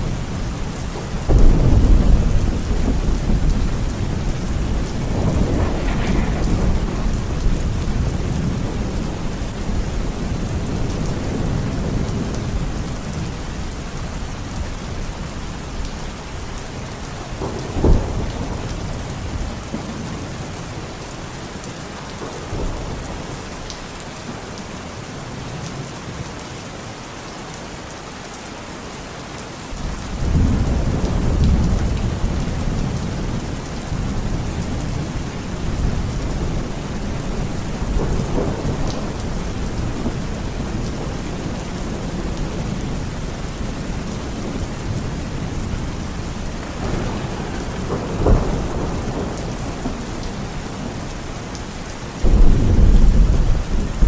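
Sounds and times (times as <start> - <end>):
thunder rumbling: 0.0 - 15.9, 17.2 - 20.4, 29.8 - 54.0
steady rain: 0.0 - 54.0
sharp thunder crack: 1.3 - 8.9, 52.2 - 54.0.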